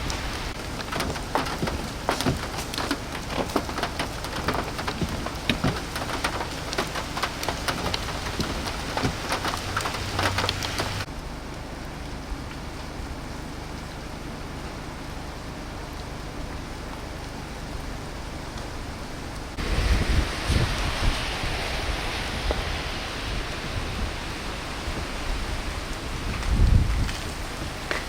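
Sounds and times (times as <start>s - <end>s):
steady hiss: 0.0s - 11.1s, 16.8s - 28.0s
wet snow and drips tapping: 0.0s - 28.0s.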